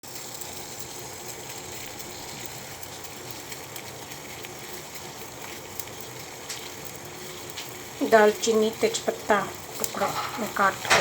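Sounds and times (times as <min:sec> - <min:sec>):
crackles: 0:00.0 - 0:11.0
spices sizzling in a hot pan: 0:00.0 - 0:11.0.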